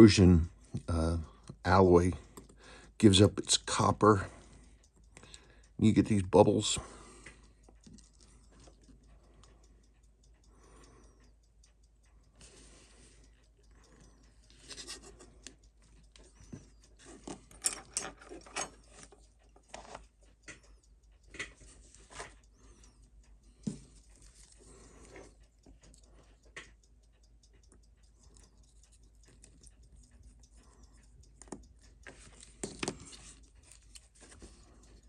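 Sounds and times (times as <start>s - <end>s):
small tool clicks and taps: 13.2s - 35.0s.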